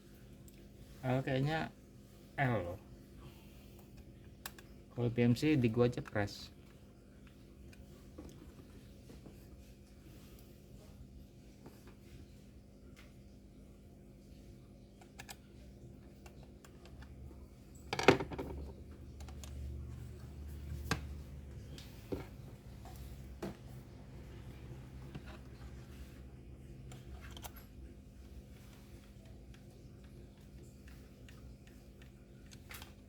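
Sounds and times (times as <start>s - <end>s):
laptop parts clicking and knocking: 17.8s - 19.5s.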